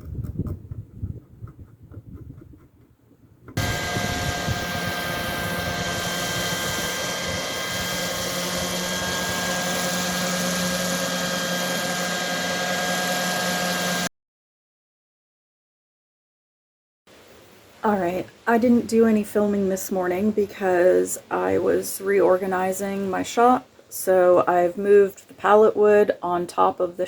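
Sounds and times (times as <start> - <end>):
power tool motor whining: 3.6 - 14.1.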